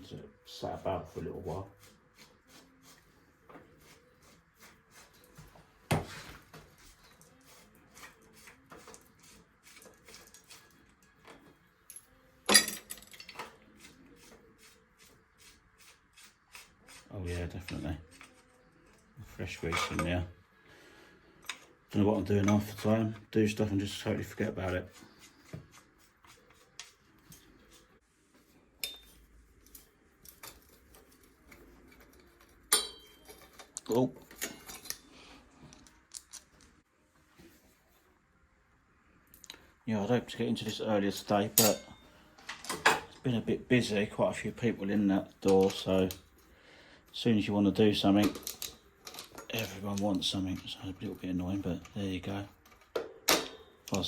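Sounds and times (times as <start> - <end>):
metal bike parts clinking: 11.8 - 13.6, 28.8 - 35.1, 41.5 - 43.2, 52.6 - 54.0.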